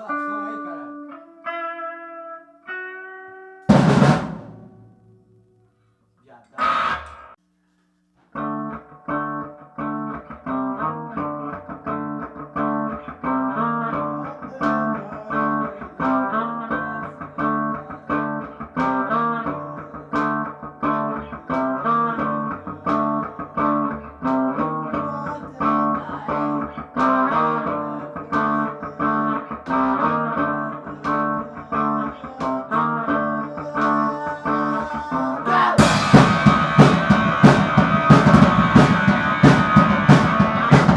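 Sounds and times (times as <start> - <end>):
solo guitar picking riff: 0.0 - 3.9, 8.4 - 40.9
full band with drums: 3.7 - 4.8, 35.7 - 40.9.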